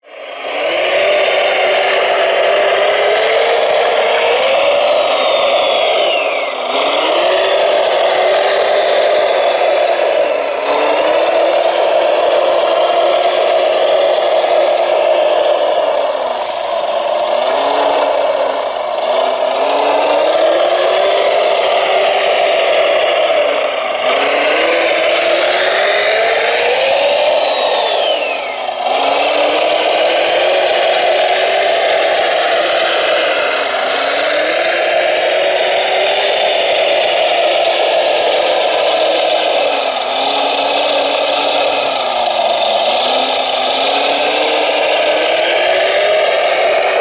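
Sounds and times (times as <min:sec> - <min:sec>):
model motor whine rising and falling: 0:00.0 - 0:47.0
steady drone: 0:37.0 - 0:47.0.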